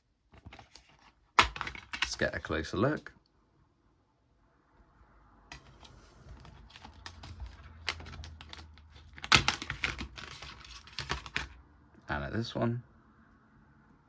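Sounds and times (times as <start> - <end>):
plastic dvd case clicks: 0.4 - 2.3, 6.4 - 11.6.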